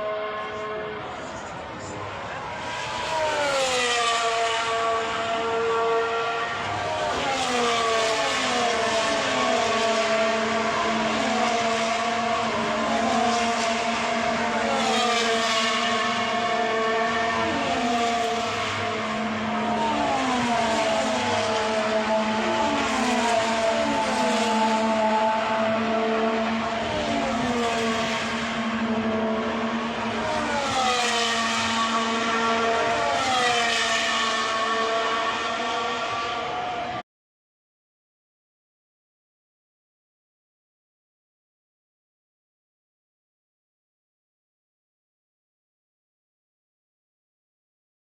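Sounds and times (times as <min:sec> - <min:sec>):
engines passing by: 0:00.0 - 0:37.0.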